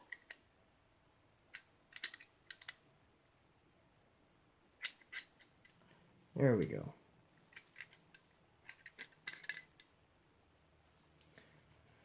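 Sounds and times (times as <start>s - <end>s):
small metal parts clicking: 0.1s - 0.4s, 1.5s - 2.8s, 4.8s - 5.8s, 7.5s - 9.9s.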